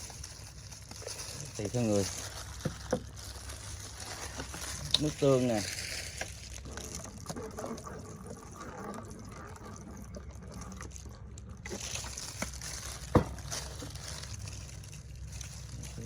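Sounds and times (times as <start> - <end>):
liquid pouring into a bowl: 6.3 - 16.0.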